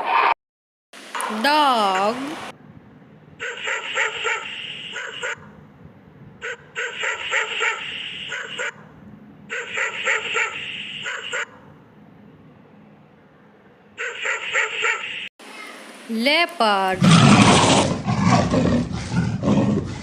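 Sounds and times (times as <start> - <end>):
dog barking: 3.4 - 5.5, 6.4 - 11.7, 14.0 - 15.3.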